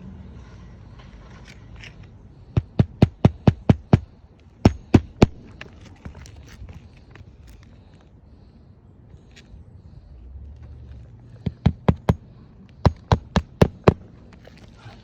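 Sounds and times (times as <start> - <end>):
hammer knocking on roof: 2.6 - 5.4.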